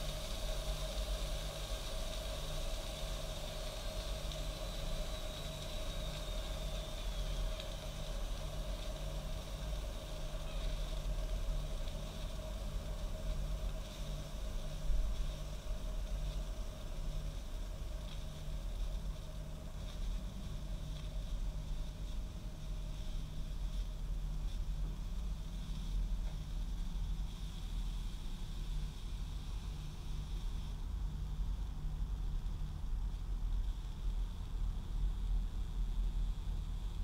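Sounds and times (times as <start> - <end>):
coffee machine steamy hiss: 0.0 - 37.0
faint high whistle: 4.5 - 8.3.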